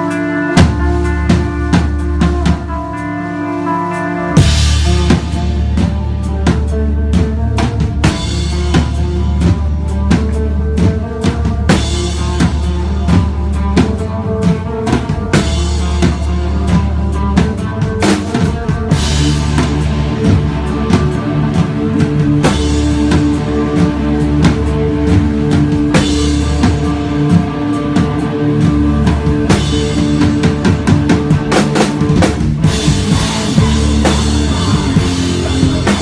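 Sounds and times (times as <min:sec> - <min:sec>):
rock band playing live: 0:00.0 - 0:36.0
drum kit hits: 0:04.0 - 0:36.0.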